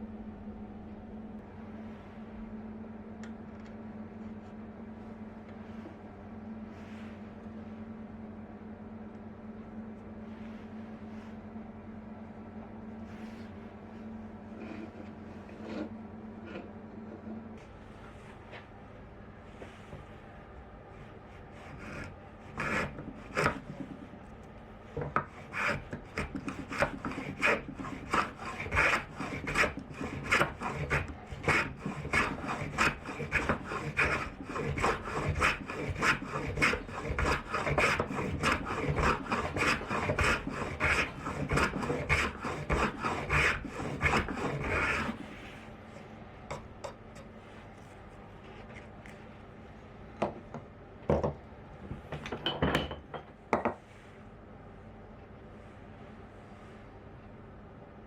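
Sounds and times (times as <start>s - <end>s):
hand tool strokes on wood: 25.3s - 45.7s.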